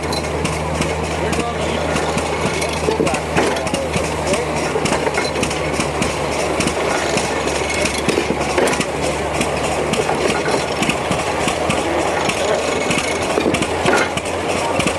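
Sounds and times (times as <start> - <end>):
engine droning: 0.0 - 14.9
hay baler clattering: 0.0 - 14.9.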